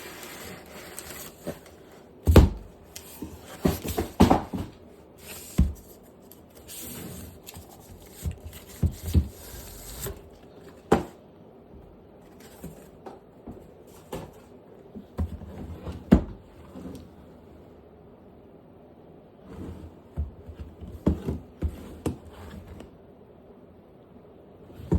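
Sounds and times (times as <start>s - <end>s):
packaging rustling: 0.0s - 1.8s.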